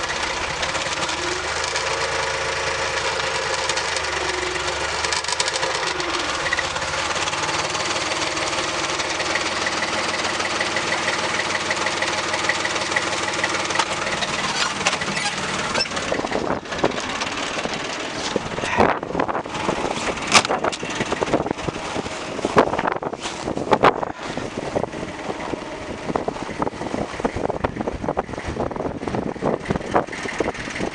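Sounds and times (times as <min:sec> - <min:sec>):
engine knocks and clatter: 0:00.0 - 0:30.9
tractor diesel engine idling: 0:00.0 - 0:30.9.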